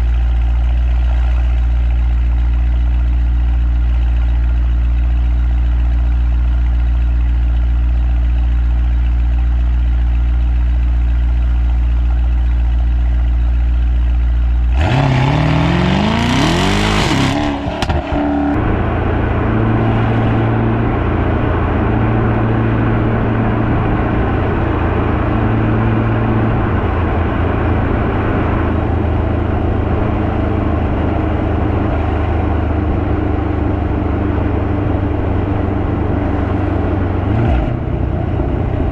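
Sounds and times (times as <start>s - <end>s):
car engine revving: 14.7s - 38.9s.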